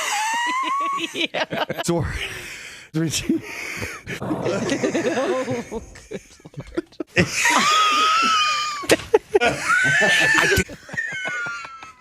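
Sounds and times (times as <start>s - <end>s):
man wheezing laugh: 4.5s - 12.0s.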